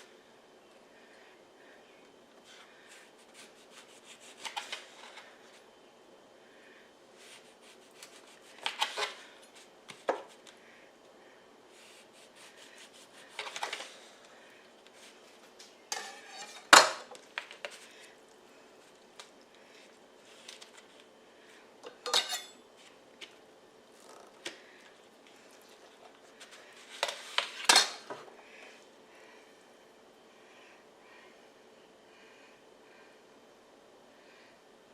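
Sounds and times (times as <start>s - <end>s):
knife clinking and scraping on plate: 15.9s - 16.8s, 21.9s - 22.6s.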